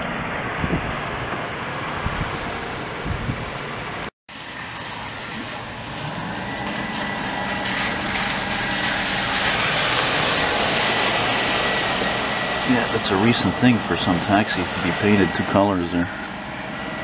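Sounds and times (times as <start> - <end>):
car approaching through water: 0.0 - 17.0
steady high tone: 10.7 - 17.0.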